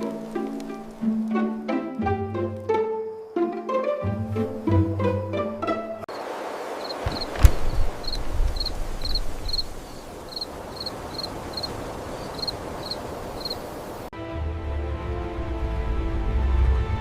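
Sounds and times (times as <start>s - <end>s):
crickets chirping: 0.0s - 14.1s
sharp knock: 7.0s - 7.9s.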